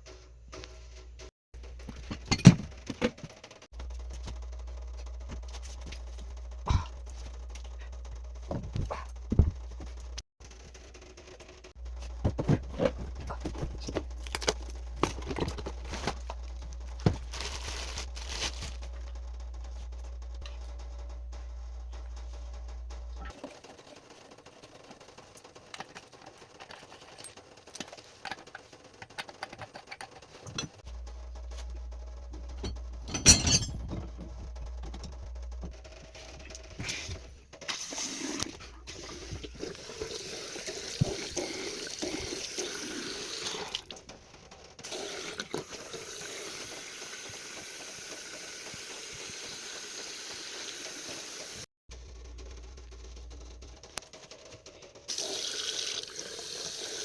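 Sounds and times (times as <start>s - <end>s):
steady low hum: 3.7s - 23.3s.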